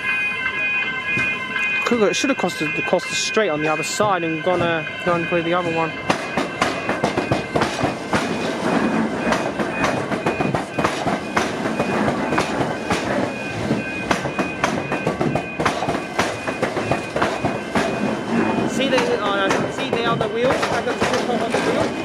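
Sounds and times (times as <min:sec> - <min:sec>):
passing train rumble: 0:00.0 - 0:22.0
train wheels clattering over crossing: 0:06.0 - 0:22.0.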